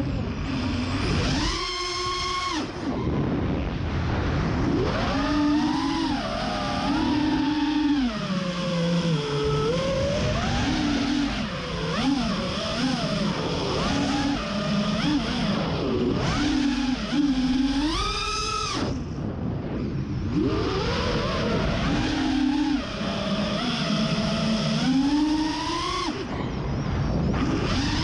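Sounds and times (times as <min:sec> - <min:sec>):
quadcopter motors whining: 0:00.0 - 0:28.0.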